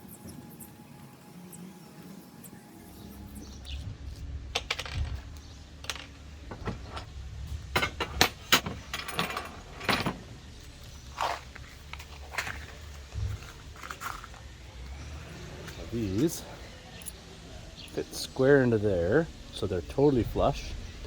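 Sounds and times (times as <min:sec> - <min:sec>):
metal hardware clinking: 0:04.5 - 0:10.4.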